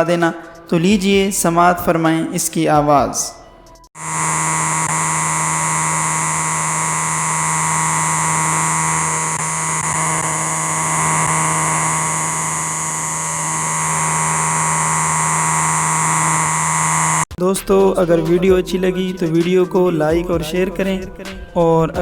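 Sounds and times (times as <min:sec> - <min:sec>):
steady insect-like drone: 0:04.0 - 0:17.3.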